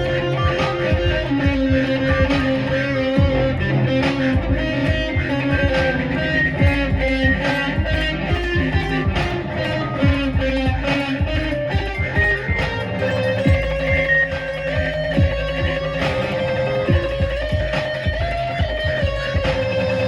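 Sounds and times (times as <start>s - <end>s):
deep kick drums: 0.0s - 12.8s, 13.4s - 16.3s, 16.9s - 19.6s
electric guitar melody: 0.0s - 20.0s
electronic backing track: 0.0s - 20.0s.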